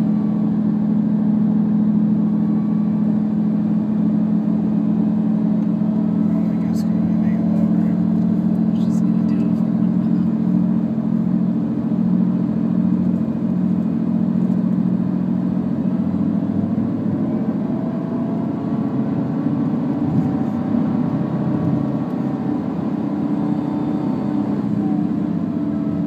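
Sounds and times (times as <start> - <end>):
car engine humming: 0.0 - 26.0
siren-like gliding tone: 22.2 - 26.0.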